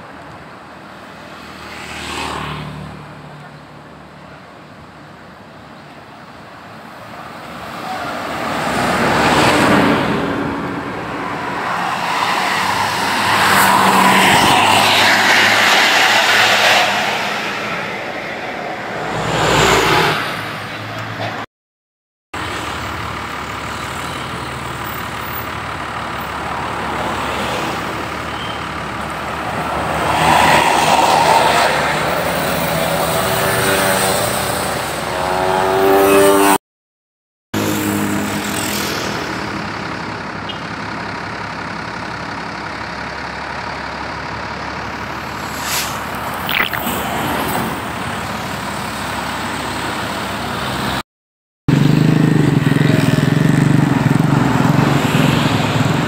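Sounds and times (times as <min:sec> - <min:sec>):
buses and trucks passing: 0:00.0 - 0:21.5, 0:22.4 - 0:36.6, 0:37.6 - 0:51.0, 0:51.7 - 0:56.0
short hisses or knocks: 0:45.4 - 0:46.9.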